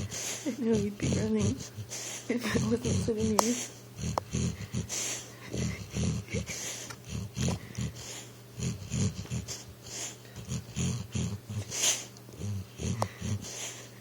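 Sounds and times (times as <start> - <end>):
dog whimpering: 0.0 - 3.4
dog snoring: 0.0 - 13.9
dog dream noises: 0.0 - 14.0.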